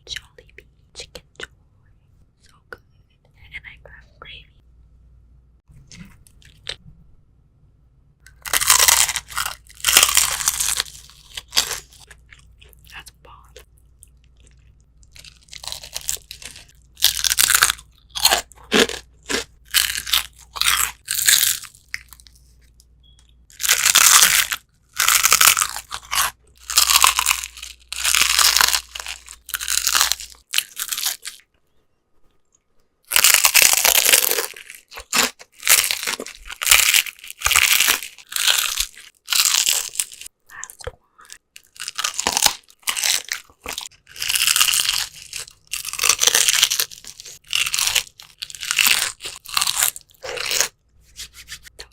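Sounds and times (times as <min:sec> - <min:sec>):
fried chicken crunching: 0:08.3 - 0:13.0, 0:14.2 - 0:22.4, 0:23.5 - 0:31.5, 0:33.0 - 0:40.3, 0:41.3 - 0:50.8.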